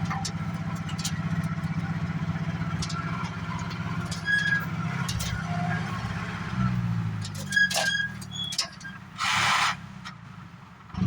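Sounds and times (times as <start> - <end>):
truck engine running: 0.0 - 11.0
short high squeak: 7.4 - 9.8.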